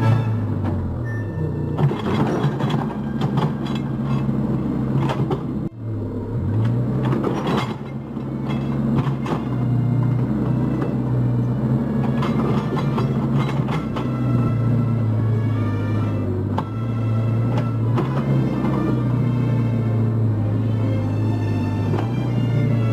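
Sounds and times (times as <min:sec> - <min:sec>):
excavator diesel engine under load: 0:00.0 - 0:22.9
knocks and scrapes: 0:01.7 - 0:05.7, 0:06.6 - 0:14.8.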